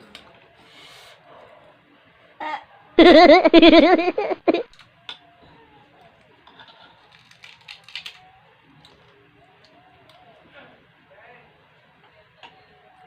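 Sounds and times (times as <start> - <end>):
person giggling loudly: 3.0 - 4.7.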